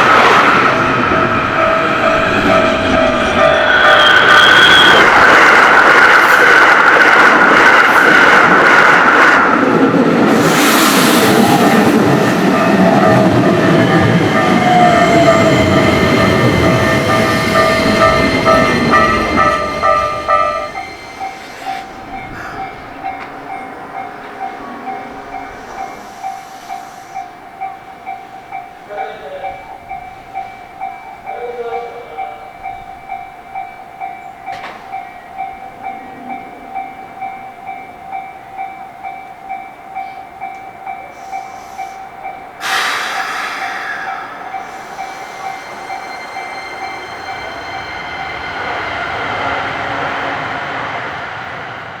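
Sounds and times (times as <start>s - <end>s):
train rushing past: 0.0s - 52.0s
level crossing bell ringing: 12.5s - 26.4s.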